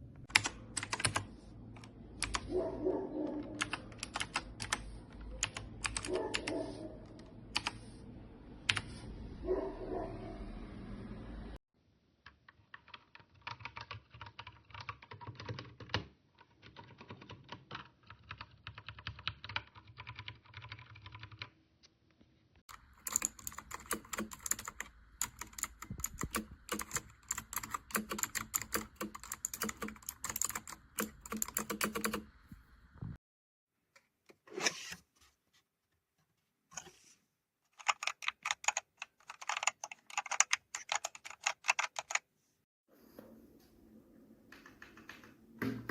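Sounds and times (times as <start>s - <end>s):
fast mechanical keyboard typing: 0.3s - 1.3s, 2.2s - 2.5s, 3.5s - 6.5s, 12.5s - 21.5s, 22.7s - 32.4s, 37.8s - 42.2s.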